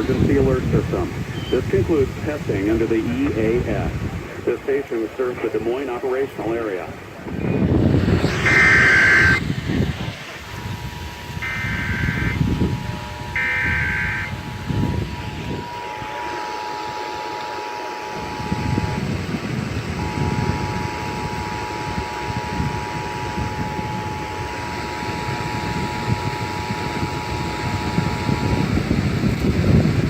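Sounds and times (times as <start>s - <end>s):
rough rumbling background noise: 0.0s - 30.0s
two-tone alert signal: 7.4s - 17.2s.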